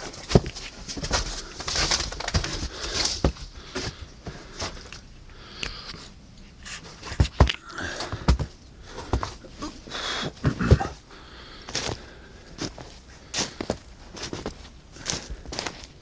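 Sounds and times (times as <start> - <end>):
rustling: 0.0 - 5.0.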